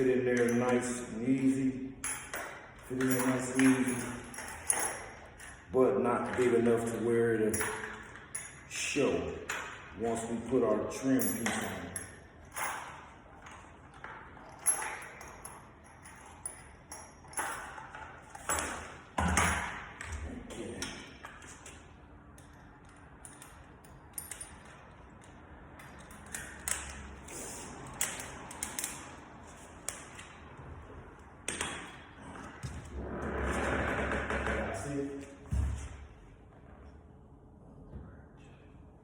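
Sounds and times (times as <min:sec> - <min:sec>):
hand tools tapping and clicking: 0:20.8 - 0:29.2.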